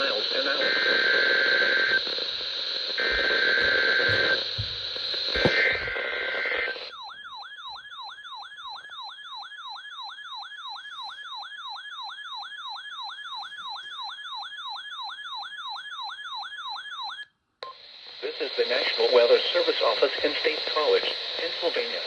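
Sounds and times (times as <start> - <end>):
harsh data signal burst: 2.8 - 6.8.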